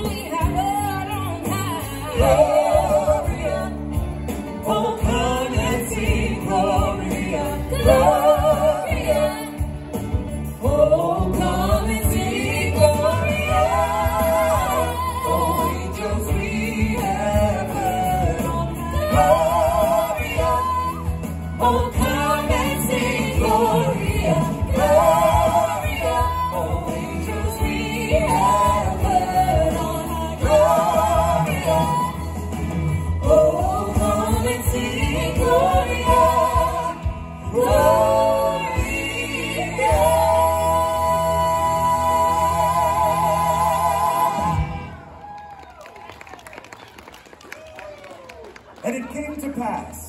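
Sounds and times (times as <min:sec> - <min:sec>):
song with singing voice: 0:00.0 - 0:46.1.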